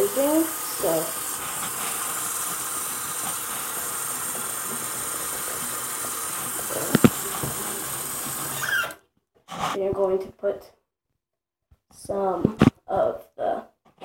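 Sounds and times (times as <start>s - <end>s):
tap water running into sink: 0.0s - 9.0s.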